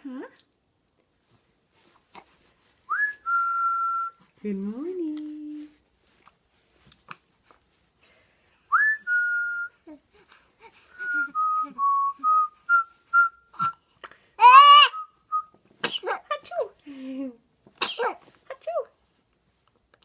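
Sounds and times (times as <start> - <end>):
person whistling a tune: 2.9 - 4.2, 8.7 - 9.8, 10.9 - 13.8
loud high-pitched yell: 14.4 - 15.1.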